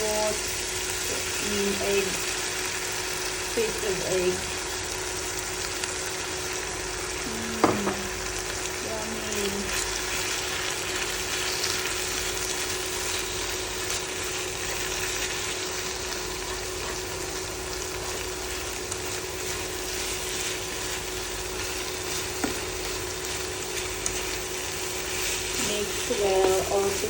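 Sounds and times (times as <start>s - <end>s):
food sizzling in a pan: 0.0s - 27.0s.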